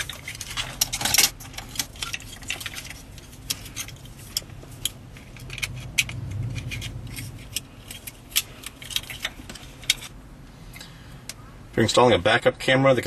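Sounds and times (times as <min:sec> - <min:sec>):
low hum: 0:03.4 - 0:11.7.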